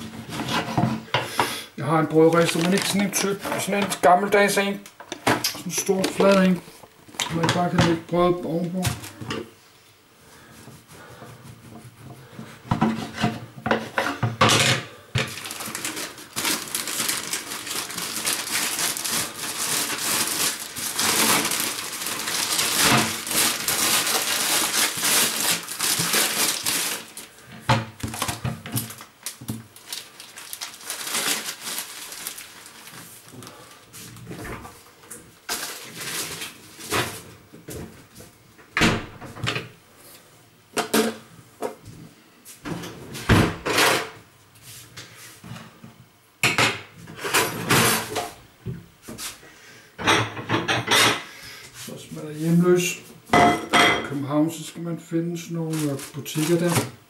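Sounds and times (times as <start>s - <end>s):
plastic rustling and crinkling: 0.0s - 1.2s, 1.8s - 9.6s, 10.4s - 38.4s, 54.5s - 57.0s
dishes clattering: 53.3s - 54.1s.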